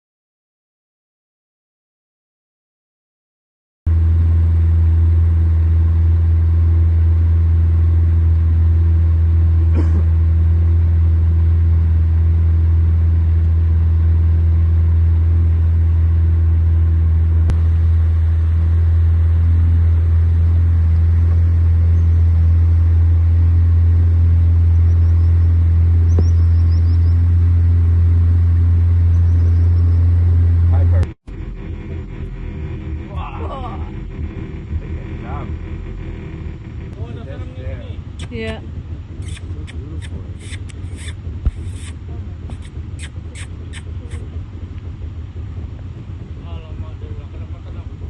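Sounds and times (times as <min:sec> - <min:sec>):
boat engine running: 0:03.9 - 0:48.0.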